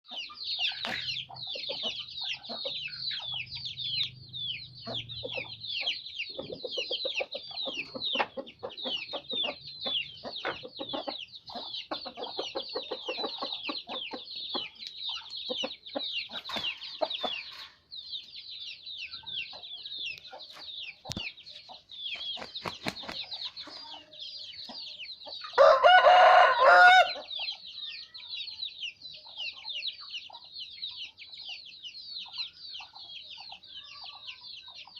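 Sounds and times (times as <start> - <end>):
chickens clucking: 0.1 - 34.9
chicks chirping: 0.1 - 34.9
rooster crowing: 25.6 - 27.2.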